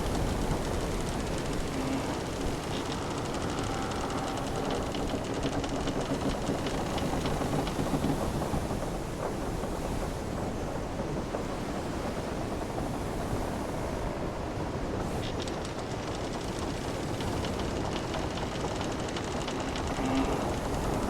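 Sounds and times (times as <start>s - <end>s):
wooden ship timbers creaking: 0.0s - 8.2s, 15.0s - 21.0s
sea and wind rushing: 0.0s - 21.0s.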